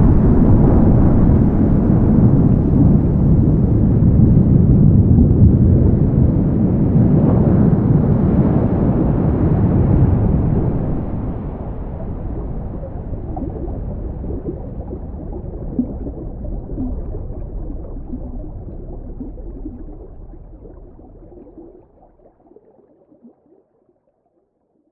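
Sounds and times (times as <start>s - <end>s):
rushing water: 8.6s - 23.6s.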